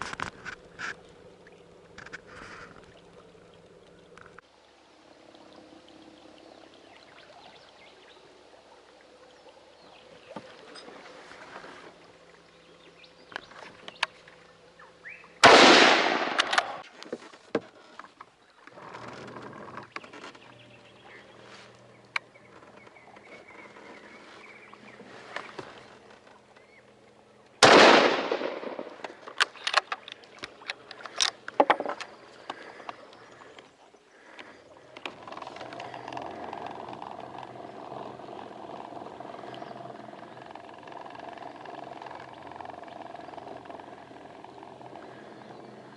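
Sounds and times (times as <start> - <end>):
gunshots: 15.4 - 16.8, 27.6 - 29.0
small sharp clicks and knocks: 28.5 - 33.7.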